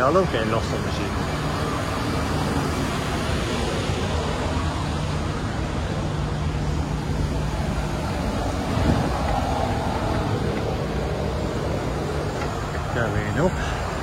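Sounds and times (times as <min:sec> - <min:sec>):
ship machinery humming: 0:00.0 - 0:14.0
wind rushing: 0:01.6 - 0:12.8.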